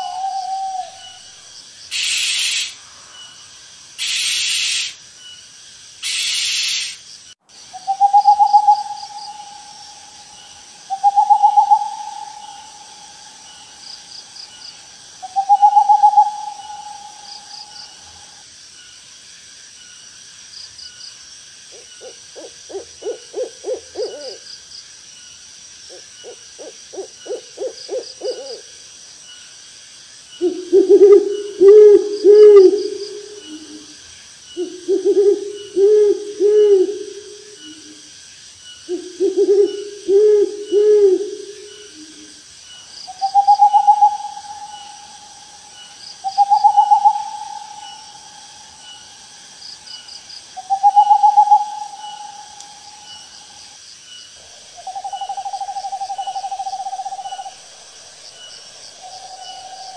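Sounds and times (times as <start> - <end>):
high drawn-out owl call: 0.0 - 2.8, 4.0 - 5.0, 6.0 - 7.0, 7.6 - 18.4, 21.7 - 24.4, 25.9 - 28.7, 30.4 - 38.0, 38.8 - 42.3, 43.1 - 49.3, 50.6 - 53.6, 54.8 - 57.6
owls hooting: 0.0 - 2.8, 7.7 - 14.2, 15.2 - 18.4, 21.7 - 24.4, 25.9 - 28.6, 30.4 - 33.9, 34.6 - 38.0, 38.9 - 42.3, 43.1 - 48.7, 50.6 - 53.2.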